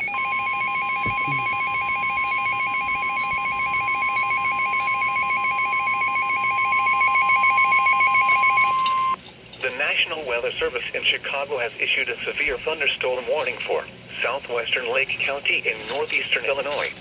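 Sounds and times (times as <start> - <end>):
trilling warble alert tone: 0.2 - 9.2.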